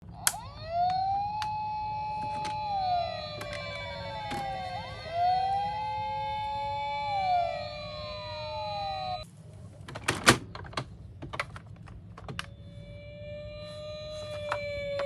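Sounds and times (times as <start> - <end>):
toy ambulance sirens wailing: 0.0 - 9.3, 12.3 - 15.0.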